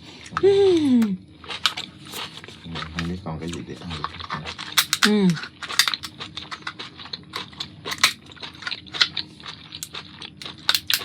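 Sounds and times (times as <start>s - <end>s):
lobster shell cracking: 1.5s - 9.2s, 9.8s - 11.0s.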